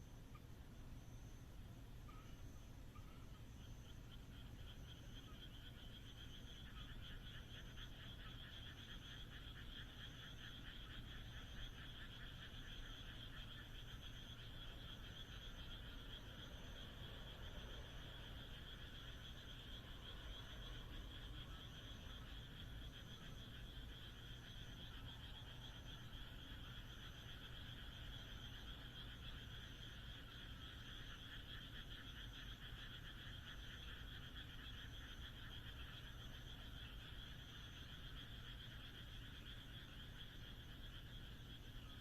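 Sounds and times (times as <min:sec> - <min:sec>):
frogs calling: 0:00.0 - 0:42.0
faint high chirp: 0:02.0 - 0:03.2.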